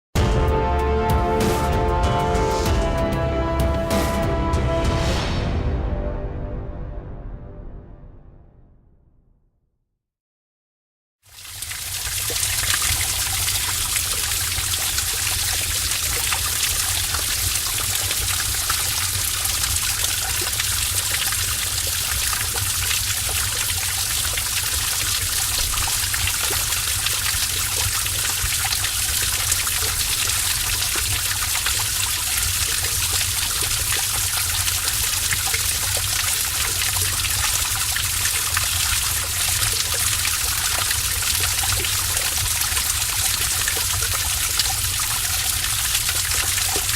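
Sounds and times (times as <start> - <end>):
stream of water running: 11.2 - 46.9.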